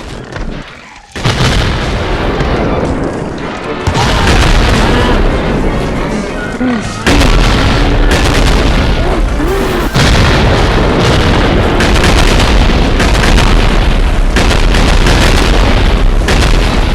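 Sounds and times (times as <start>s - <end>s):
stomach growl rumbling: 6.5s - 12.8s.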